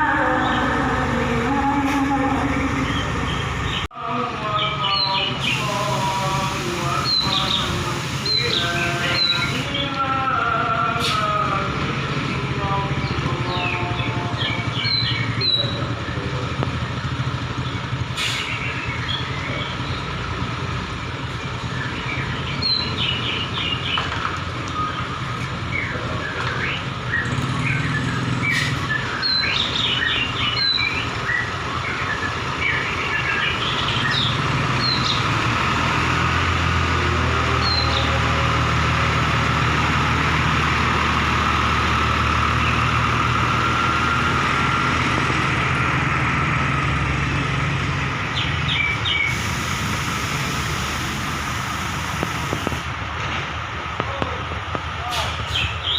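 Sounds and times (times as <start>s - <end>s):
birds chirping: 0.0s - 50.4s, 54.0s - 55.9s
heavy truck engine running: 0.0s - 55.9s.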